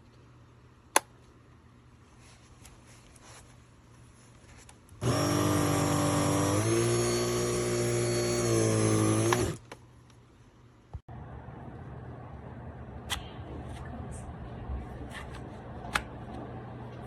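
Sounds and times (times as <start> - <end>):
upright vacuum running: 5.0 - 9.7.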